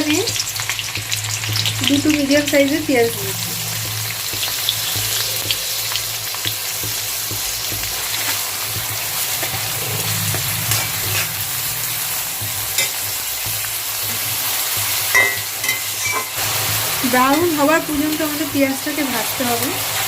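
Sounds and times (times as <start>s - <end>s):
low hum: 0.0s - 7.8s, 8.4s - 15.6s
onions sizzling in oil: 0.0s - 20.0s.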